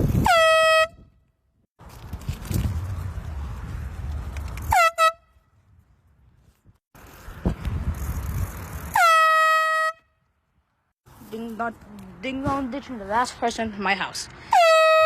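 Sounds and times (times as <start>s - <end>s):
air horn blasting: 0.2s - 1.1s, 4.7s - 5.4s, 8.9s - 10.1s.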